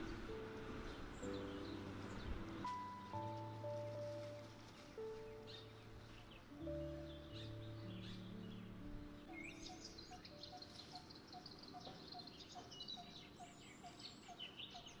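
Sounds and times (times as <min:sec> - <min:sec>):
background music: 0:00.0 - 0:11.0
faint birdsong: 0:00.0 - 0:15.0.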